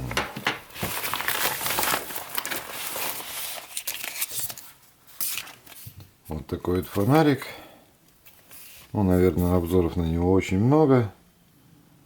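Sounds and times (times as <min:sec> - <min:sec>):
packaging crinkling: 0:00.4 - 0:05.8.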